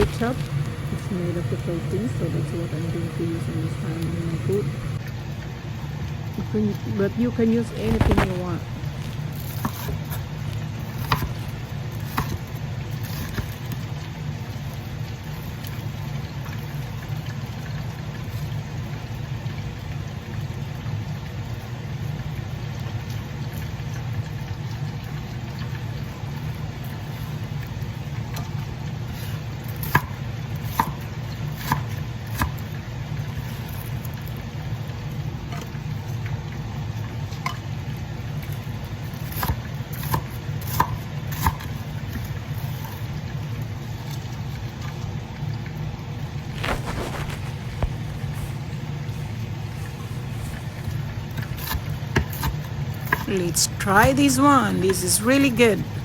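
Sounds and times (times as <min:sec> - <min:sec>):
steady low hum: 0:00.0 - 0:05.1.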